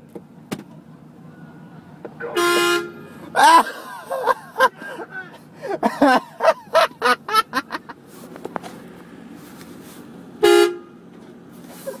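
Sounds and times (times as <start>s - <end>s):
air horn blast: 2.3s - 3.2s, 10.4s - 11.0s.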